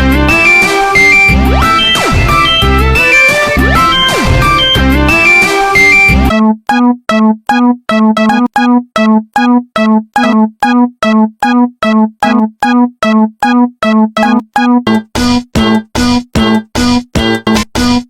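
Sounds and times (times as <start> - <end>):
music burst: 0.0 - 6.3.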